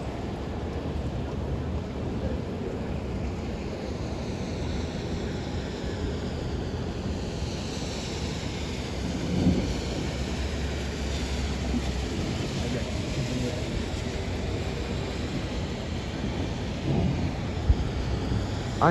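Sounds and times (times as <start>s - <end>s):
wind-driven rain: 0.0s - 18.9s
low thunder rumble: 8.2s - 18.9s.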